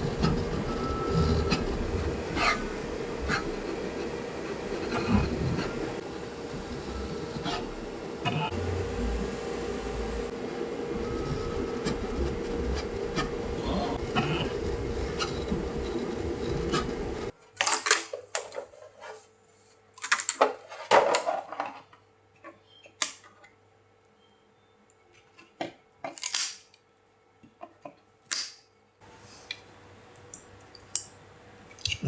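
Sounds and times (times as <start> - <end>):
three d printer humming: 0.0 - 17.3.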